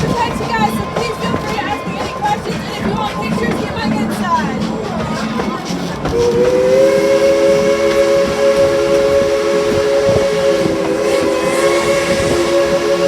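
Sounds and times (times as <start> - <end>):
moving train noise: 0.0 - 13.0
steam locomotive chime whistle: 6.1 - 13.0.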